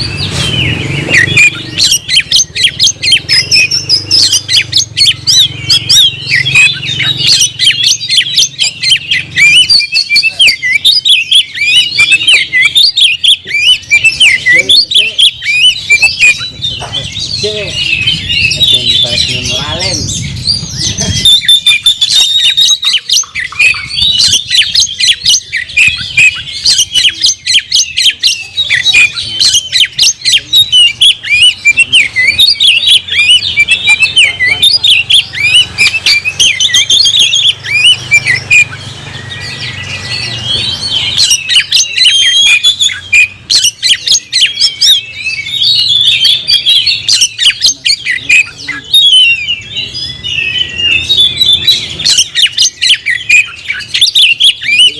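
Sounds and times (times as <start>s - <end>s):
bird singing: 0.0s - 54.9s.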